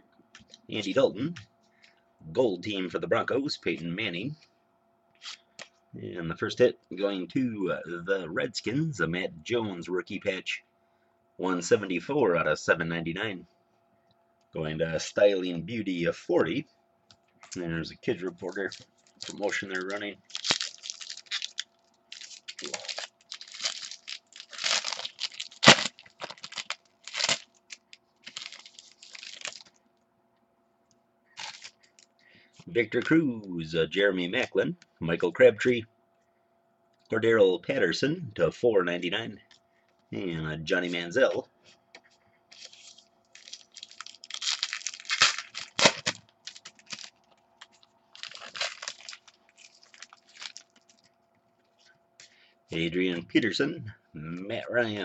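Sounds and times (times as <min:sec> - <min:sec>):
wrappers tearing and crinkling: 0:18.4 - 0:29.8, 0:31.4 - 0:32.1, 0:42.5 - 0:51.1.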